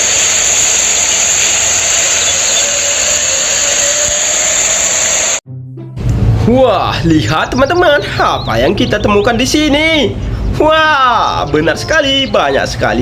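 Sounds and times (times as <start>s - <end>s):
loud rushing hiss: 0.0s - 5.4s.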